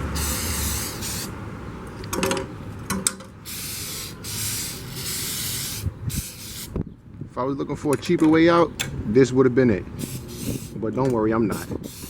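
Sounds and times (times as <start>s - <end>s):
aerosol can spraying hiss: 0.2s - 1.3s, 3.5s - 6.7s, 10.0s - 10.8s, 11.5s - 12.0s.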